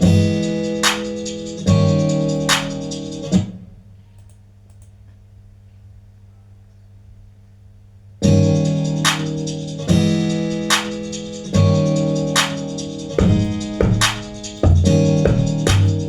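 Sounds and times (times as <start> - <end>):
sharp beat hits: 0.0 - 3.5, 8.2 - 16.0
sustained keyboard chords: 0.0 - 3.5, 8.2 - 16.0
faint low hum: 3.4 - 8.4.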